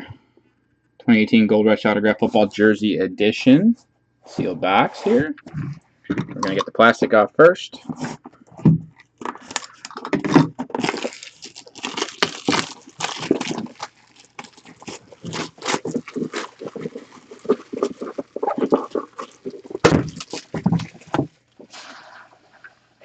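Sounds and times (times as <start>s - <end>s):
plastic shrink-wrap crinkling: 9.2s - 22.7s.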